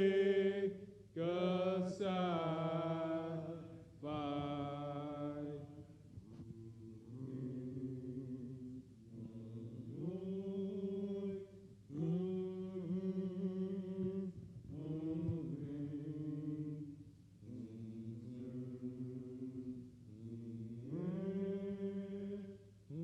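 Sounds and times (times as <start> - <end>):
men singing a cappella hymn: 0.0 - 23.0.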